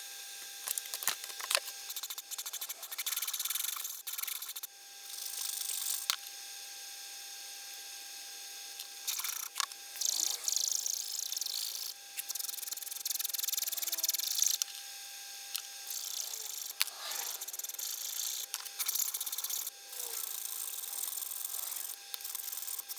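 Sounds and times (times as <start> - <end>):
hand file rasping on metal: 15.9 - 22.9.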